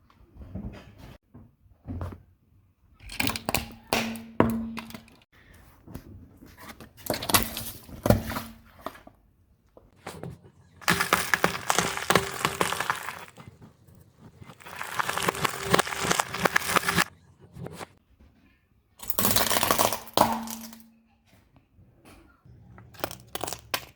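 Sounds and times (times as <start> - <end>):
objects crushed under car: 10.8 - 13.4, 14.5 - 17.1.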